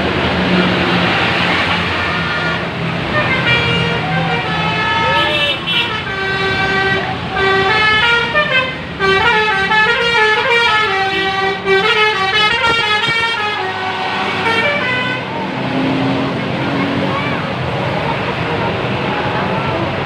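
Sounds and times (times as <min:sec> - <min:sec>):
musical air horns playing a tune: 0:03.1 - 0:15.3.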